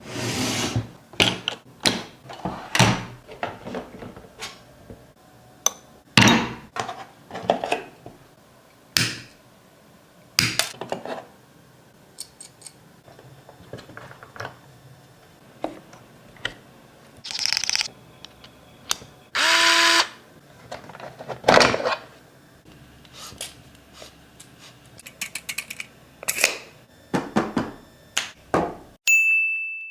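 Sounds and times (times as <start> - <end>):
tools clicking and knocking: 17.3 - 19.1, 25.0 - 26.6.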